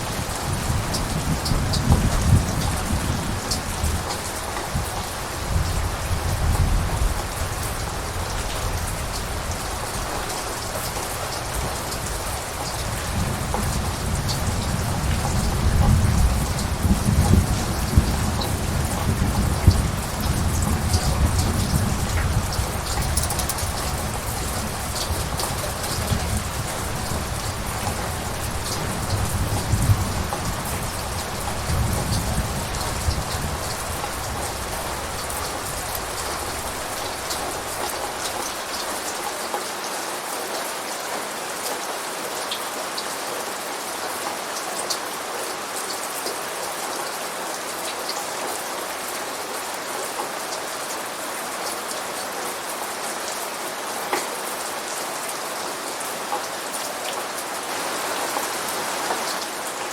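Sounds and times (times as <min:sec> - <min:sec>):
thunder rumbling: 0:00.0 - 0:38.2
steady rain: 0:00.0 - 0:59.9.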